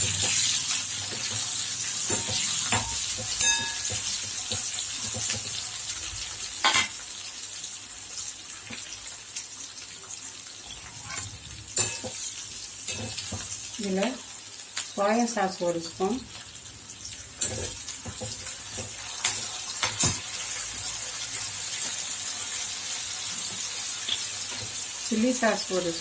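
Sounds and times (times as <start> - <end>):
vegetables sizzling in hot oil: 0.0 - 26.0
metal spatula knocking pan: 2.1 - 5.4.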